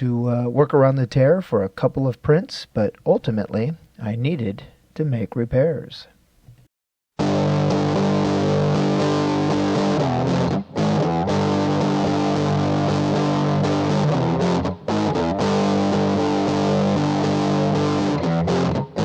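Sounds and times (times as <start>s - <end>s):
distorted electric guitar chords: 7.2s - 19.0s.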